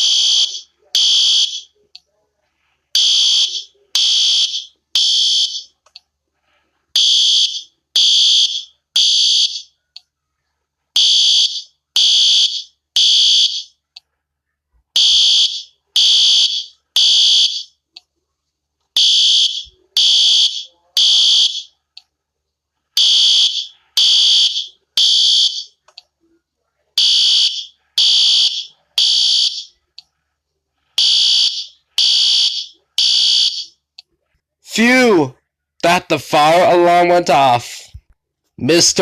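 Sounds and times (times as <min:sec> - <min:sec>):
fire alarm beeps: 0:00.0 - 0:01.7, 0:03.0 - 0:05.7, 0:07.0 - 0:09.8, 0:11.0 - 0:13.7, 0:15.0 - 0:17.8, 0:19.0 - 0:21.7, 0:23.0 - 0:25.8, 0:27.0 - 0:29.7, 0:31.0 - 0:33.8.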